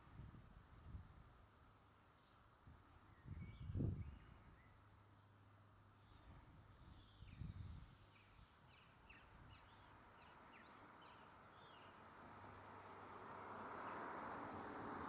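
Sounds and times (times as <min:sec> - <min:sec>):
small birds chirping: 0:02.2 - 0:12.1.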